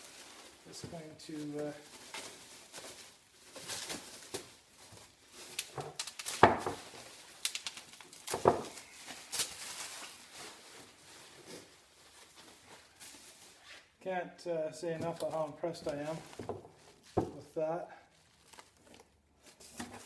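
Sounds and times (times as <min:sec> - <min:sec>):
packaging rustling: 0:00.0 - 0:13.7, 0:18.1 - 0:20.0.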